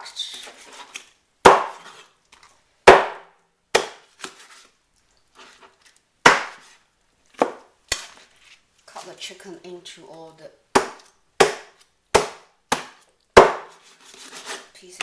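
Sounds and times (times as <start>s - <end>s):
knife chopping on board: 1.4s - 1.9s, 2.9s - 4.0s, 6.2s - 6.6s, 7.4s - 8.1s, 10.8s - 13.8s.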